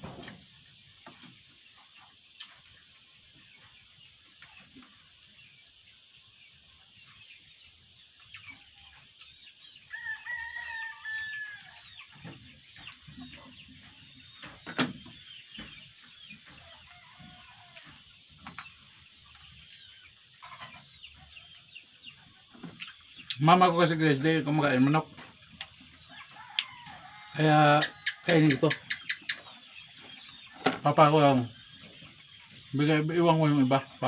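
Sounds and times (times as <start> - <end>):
birds chirping: 0.0 - 34.0
rooster crowing: 9.9 - 11.9, 16.6 - 17.8, 26.2 - 28.8.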